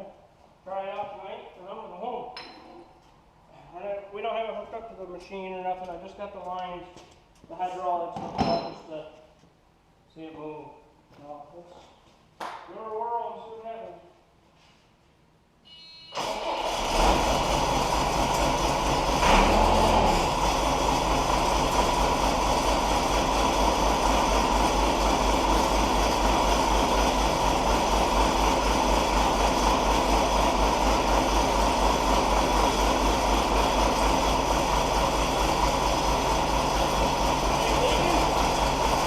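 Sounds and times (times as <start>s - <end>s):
diesel engine starting and idling: 16.1s - 39.0s.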